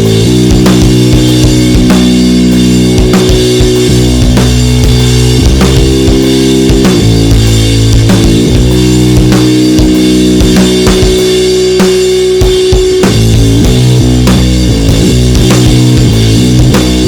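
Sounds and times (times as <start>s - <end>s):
heavily distorted guitar notes: 0.0s - 17.0s
slow steady drum beat: 0.0s - 17.0s.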